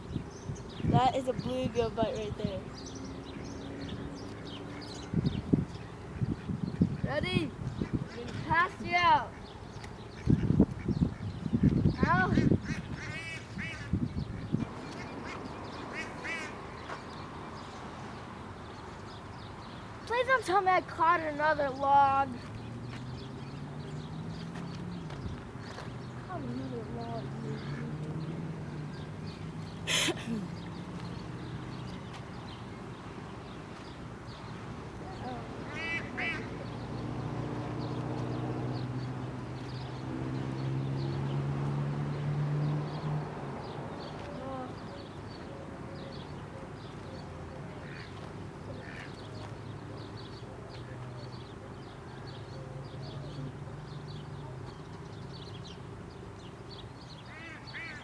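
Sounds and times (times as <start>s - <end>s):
ducks quacking: 6.1s - 9.5s, 10.1s - 17.0s, 27.4s - 28.2s, 35.2s - 36.9s, 47.8s - 49.2s, 57.3s - 58.0s.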